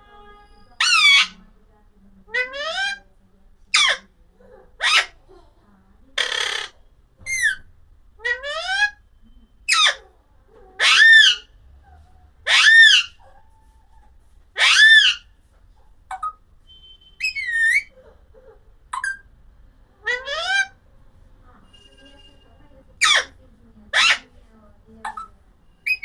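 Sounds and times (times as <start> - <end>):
parrot whistling calls: 12.5 - 13.2, 14.6 - 15.2, 16.1 - 17.9, 25.2 - 26.0.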